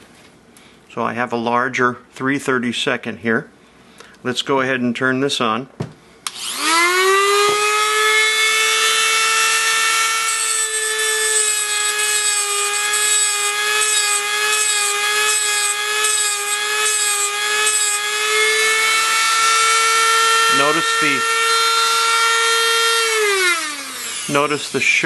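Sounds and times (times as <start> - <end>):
grinder motor whining: 6.3 - 25.0.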